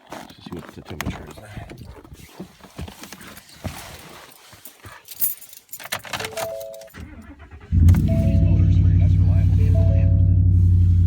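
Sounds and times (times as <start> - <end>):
keys jangling: 4.4 - 7.0
car electronic chime: 7.7 - 11.0.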